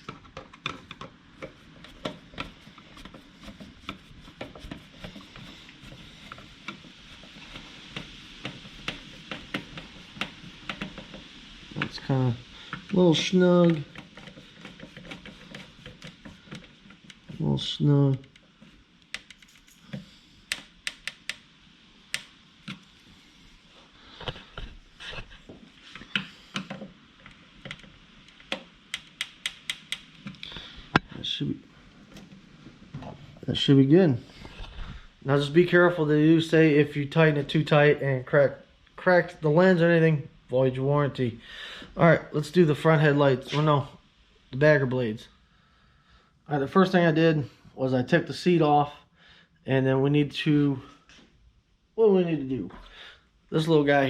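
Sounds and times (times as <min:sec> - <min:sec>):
tool scraping plastic: 0:00.0 - 0:12.0, 0:12.6 - 0:17.5.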